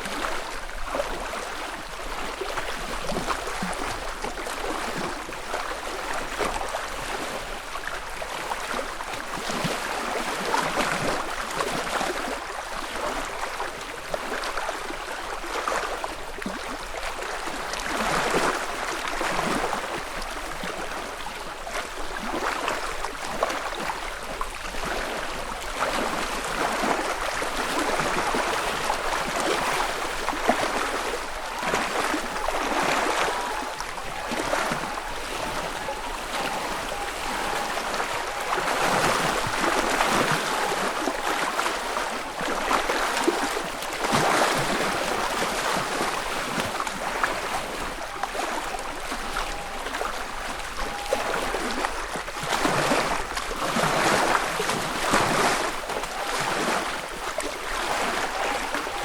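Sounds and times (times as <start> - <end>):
waves lapping against shore: 0.0 - 59.0.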